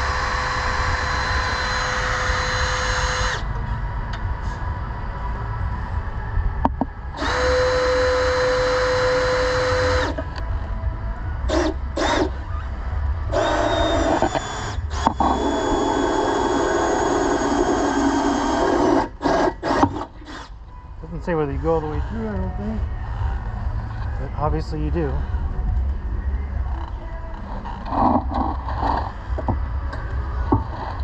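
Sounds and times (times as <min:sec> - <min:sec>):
power drill whining: 0:00.0 - 0:03.5, 0:07.2 - 0:10.3, 0:13.3 - 0:20.5.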